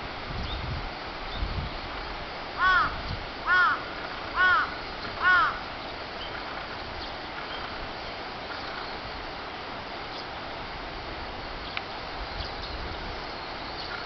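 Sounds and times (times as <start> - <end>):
steady outdoor hiss: 0.0 - 14.0
crow cawing: 2.6 - 5.6.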